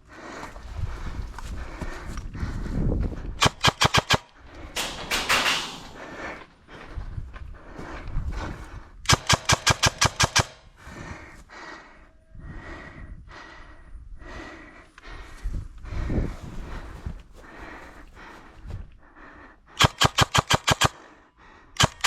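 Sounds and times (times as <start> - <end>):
airsoft gun shots: 3.4 - 4.2, 9.1 - 10.6, 19.8 - 21.0.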